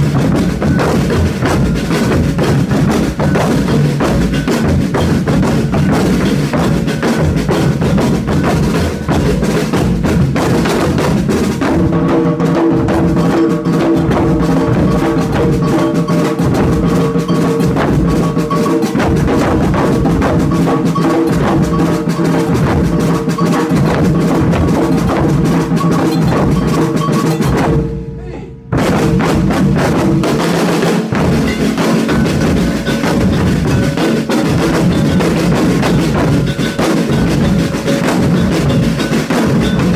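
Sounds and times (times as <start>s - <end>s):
drum ensemble playing: 0.0s - 39.9s
wood block clacks: 13.2s - 27.8s, 31.2s - 39.9s.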